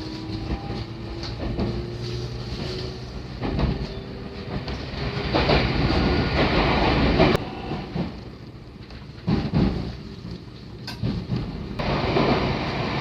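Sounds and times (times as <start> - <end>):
electric train rumble: 0.0 - 13.0
wheels clacking over rail joints: 0.0 - 13.0.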